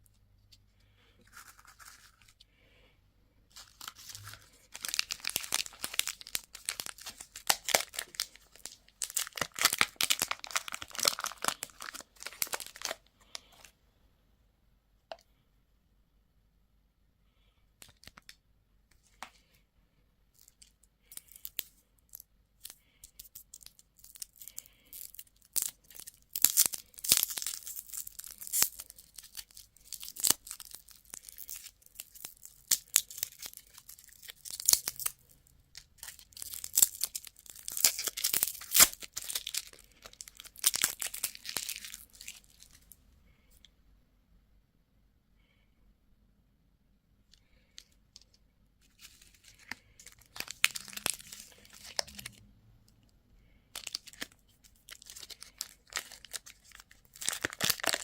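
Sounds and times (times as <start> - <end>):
candy wrappers tearing and crinkling: 1.2 - 2.4, 3.5 - 13.7, 20.4 - 43.0, 47.8 - 52.4, 53.7 - 58.0.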